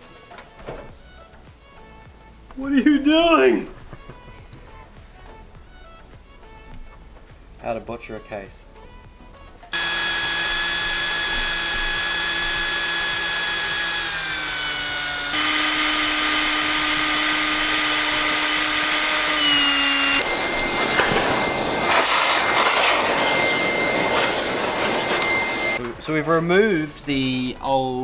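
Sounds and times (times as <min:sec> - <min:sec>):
power drill drilling into metal: 0:09.8 - 0:25.8.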